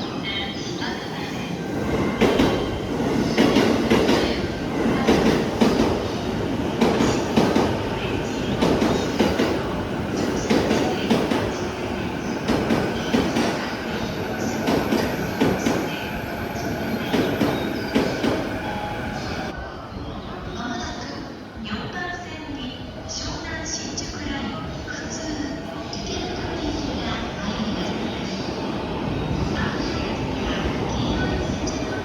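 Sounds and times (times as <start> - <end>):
train rumble from aboard: 0.0 - 19.8.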